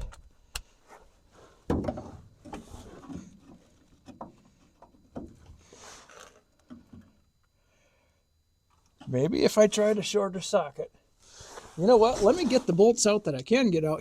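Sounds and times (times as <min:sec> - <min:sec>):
soft scrape: 0:11.3 - 0:12.8.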